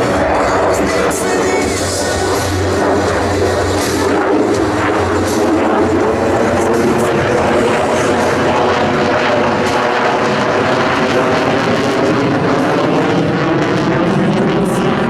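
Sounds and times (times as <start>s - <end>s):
jet engine roar: 0.0s - 15.0s.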